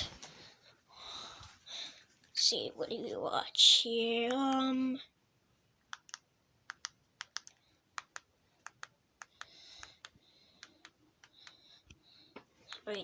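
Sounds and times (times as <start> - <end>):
remote control buttons clicking: 5.9 - 11.6.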